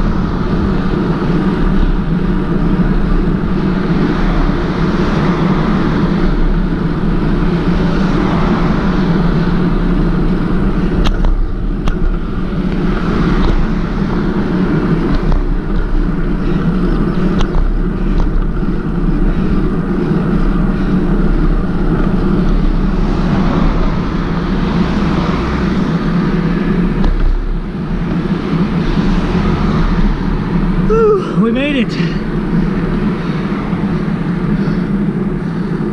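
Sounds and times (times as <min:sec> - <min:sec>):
bicycle road noise: 0:00.0 - 0:35.9
wind rushing: 0:00.0 - 0:35.9.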